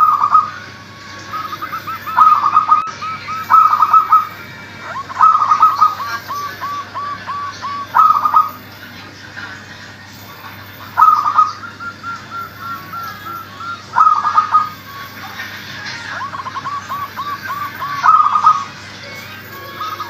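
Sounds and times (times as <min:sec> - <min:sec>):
dove cooing: 0:00.0 - 0:08.8, 0:10.4 - 0:20.0.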